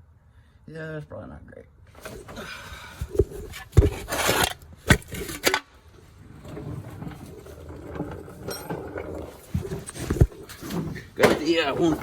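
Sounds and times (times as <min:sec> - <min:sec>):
short scrape: 0:02.0 - 0:05.6.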